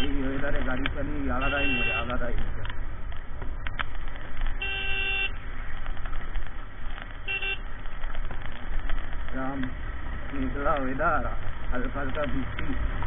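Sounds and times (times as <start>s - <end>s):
motorcycle rumble and wind: 0.0s - 13.0s
vehicle horn tooting: 1.4s - 2.2s, 4.6s - 5.4s, 7.3s - 7.7s.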